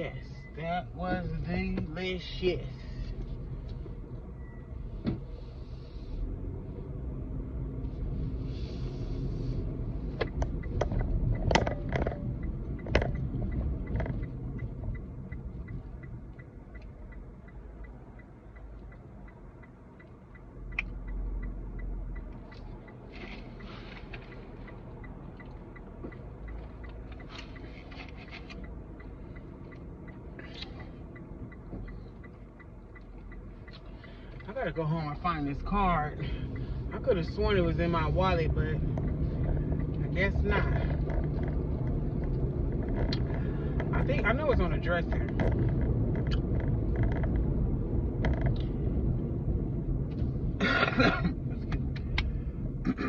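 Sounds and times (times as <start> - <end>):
car cabin rumble: 8.9 - 20.0, 21.8 - 53.0
sharp clicks and knocks: 10.2 - 16.9, 38.8 - 49.2.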